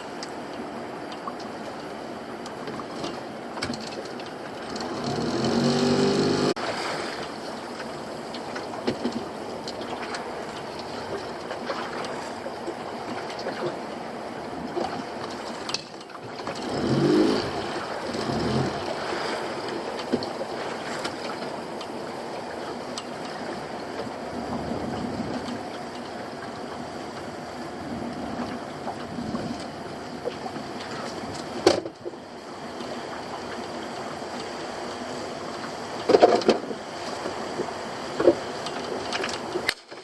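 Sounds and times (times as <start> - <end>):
water washing around boat: 0.0 - 40.0.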